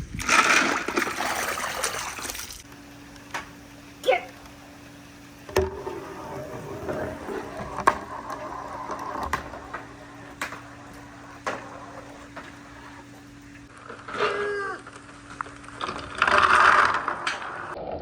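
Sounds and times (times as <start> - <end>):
steady low hum: 0.0 - 13.8
marbles rolling on wooden track: 5.5 - 13.7.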